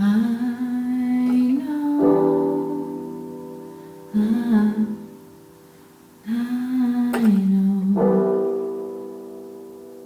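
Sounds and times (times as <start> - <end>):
person singing: 0.0 - 5.3, 6.2 - 9.0.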